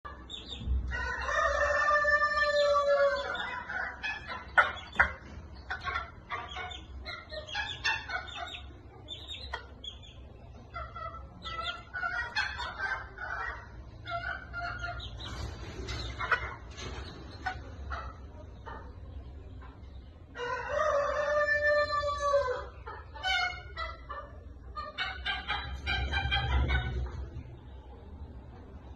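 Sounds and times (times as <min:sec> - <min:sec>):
chickens clucking and chirping: 0:00.0 - 0:28.9
rooster crowing: 0:00.9 - 0:03.3, 0:20.4 - 0:22.7.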